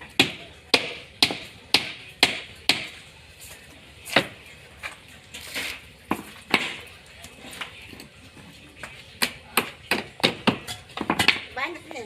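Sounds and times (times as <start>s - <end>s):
hand tool striking wood: 0.1s - 3.0s, 6.1s - 6.8s.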